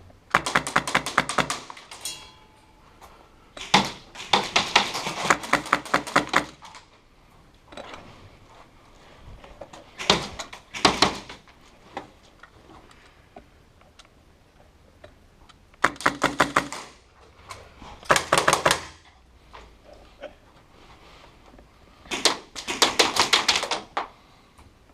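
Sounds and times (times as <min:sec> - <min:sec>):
airsoft guns firing bursts: 0:00.3 - 0:02.0, 0:03.6 - 0:06.7, 0:10.0 - 0:11.4, 0:15.8 - 0:17.0, 0:18.1 - 0:19.0, 0:22.1 - 0:23.8.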